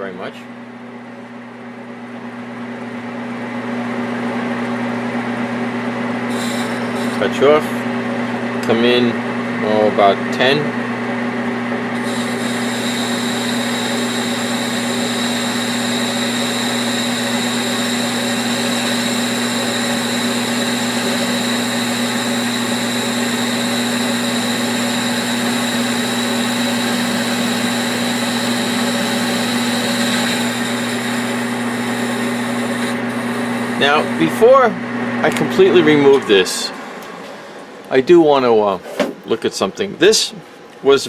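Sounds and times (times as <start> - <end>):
metal lathe cutting: 6.2 - 7.7, 11.9 - 34.7.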